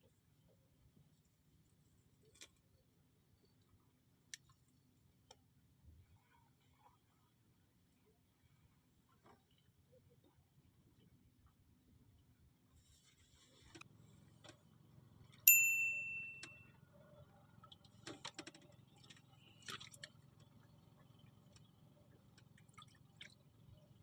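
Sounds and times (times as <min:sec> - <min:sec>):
small metal bell ringing: 0:15.5 - 0:16.7
light clicks and rattles: 0:17.6 - 0:20.5.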